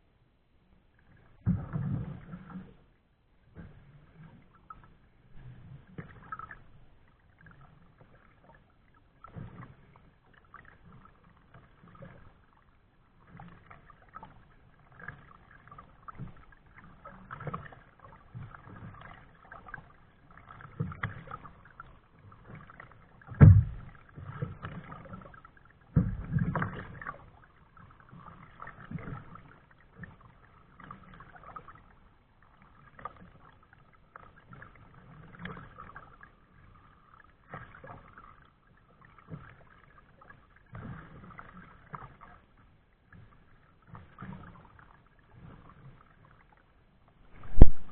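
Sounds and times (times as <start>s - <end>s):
paddle splashing in water: 1.0s - 47.9s
sharp knock: 47.4s - 47.9s.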